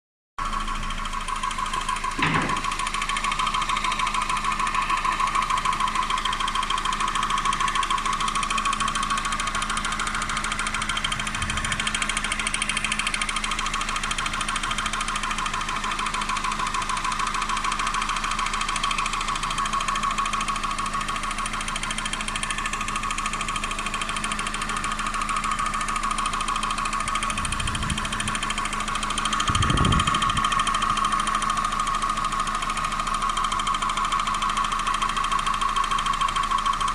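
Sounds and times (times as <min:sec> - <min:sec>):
car engine idling: 0:00.4 - 0:36.9
rapid engine knock: 0:00.4 - 0:36.9.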